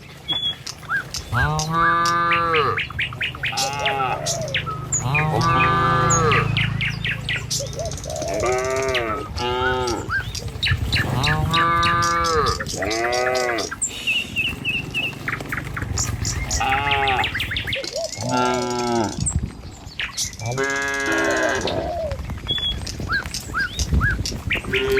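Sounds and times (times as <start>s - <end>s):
songbirds chirping: 0.0s - 24.9s
cattle mooing: 1.3s - 6.8s, 8.3s - 10.2s, 11.0s - 13.8s, 16.4s - 17.5s, 18.2s - 19.2s, 20.4s - 21.9s.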